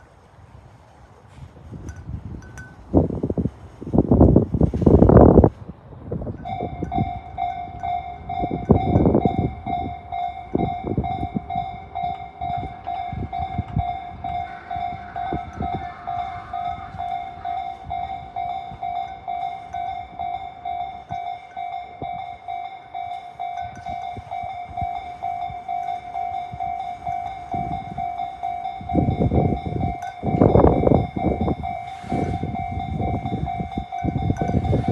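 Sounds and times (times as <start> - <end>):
electronic level crossing bell: 6.4 - 34.9.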